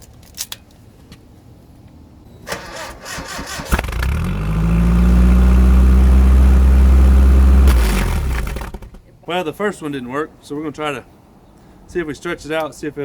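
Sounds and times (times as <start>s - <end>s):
truck starter cranking: 2.5s - 9.1s
truck engine idling loudly: 3.8s - 9.0s.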